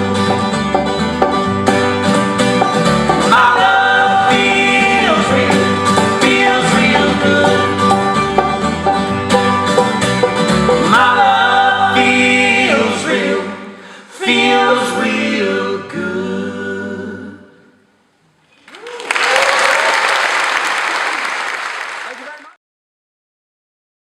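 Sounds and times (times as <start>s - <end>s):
acoustic folk band playing: 0.0s - 16.4s.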